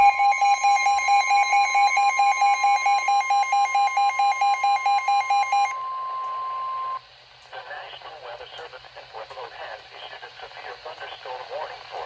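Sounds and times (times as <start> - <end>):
rapid beeping alarm: 0.0 - 7.0
steady loud alarm tone: 0.0 - 7.0.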